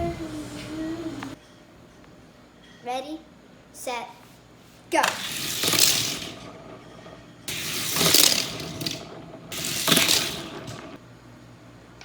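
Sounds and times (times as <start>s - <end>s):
toy cars rattling down plastic track: 5.0s - 11.0s.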